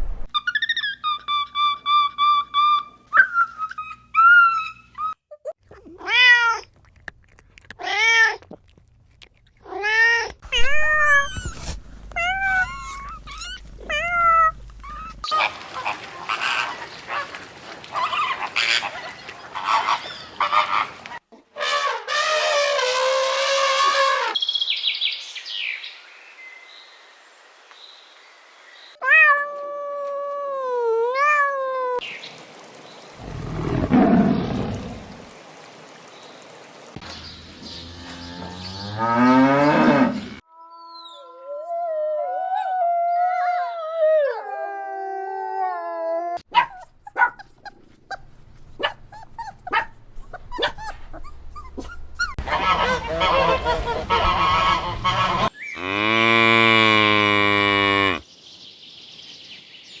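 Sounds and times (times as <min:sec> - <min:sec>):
animal clicking and chattering: 0:06.7 - 0:09.7.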